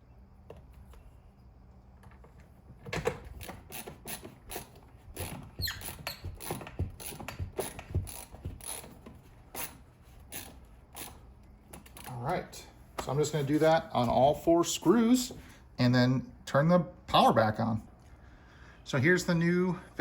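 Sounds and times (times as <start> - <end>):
rising squeak: 5.3 - 6.6.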